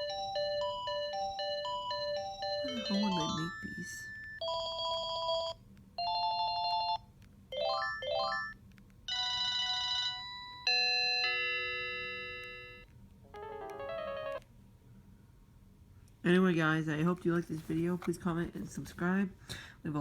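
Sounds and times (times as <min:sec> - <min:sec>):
cordless phone electronic ringtones: 0:00.0 - 0:12.8, 0:13.4 - 0:14.4.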